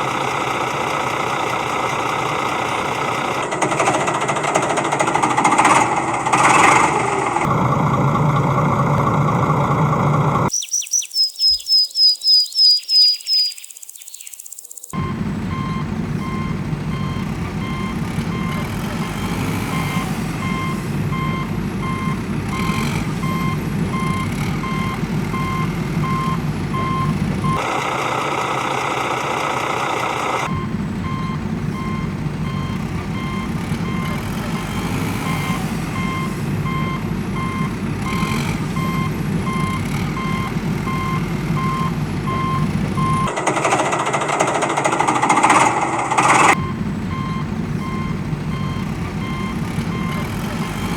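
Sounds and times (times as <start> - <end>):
heavy vehicle engine running: 0.0 - 10.5, 15.0 - 50.9
reversing alarm beeping: 10.5 - 27.7, 30.4 - 50.9.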